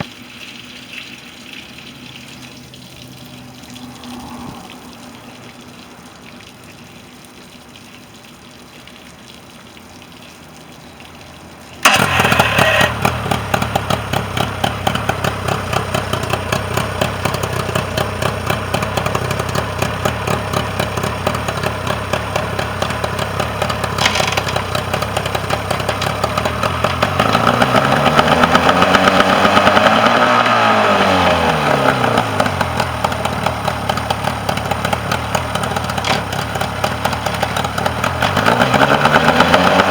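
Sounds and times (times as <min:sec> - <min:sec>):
outboard motor idling and revving: 0:11.8 - 0:39.9.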